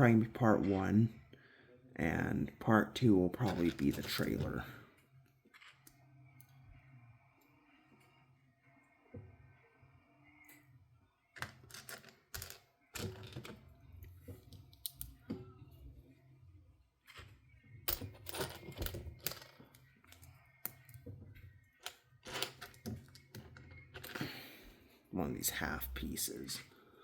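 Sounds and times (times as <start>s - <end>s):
plastic bricks clicking and rattling: 11.4s - 13.6s, 21.8s - 24.3s.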